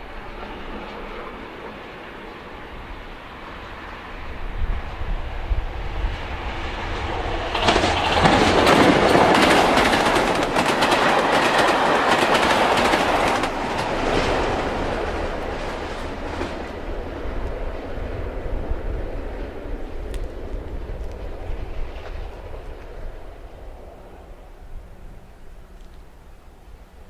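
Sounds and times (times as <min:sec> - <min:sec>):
train wheels clattering over rails: 0:06.4 - 0:17.5.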